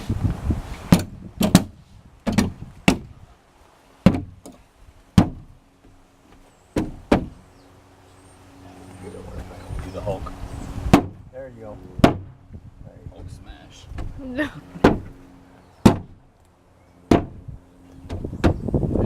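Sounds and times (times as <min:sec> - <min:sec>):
wooden board knocking: 0:00.9 - 0:03.1, 0:04.0 - 0:04.5, 0:05.2 - 0:06.0, 0:06.8 - 0:07.4, 0:10.9 - 0:11.2, 0:14.8 - 0:15.2, 0:17.1 - 0:17.4.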